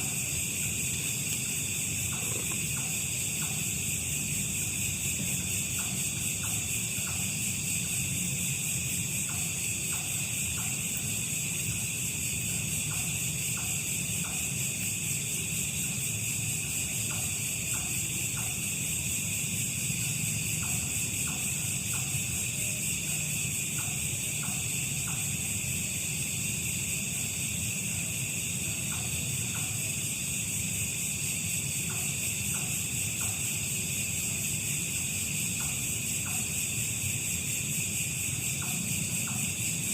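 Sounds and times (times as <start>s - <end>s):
insect chorus: 0.0s - 39.9s.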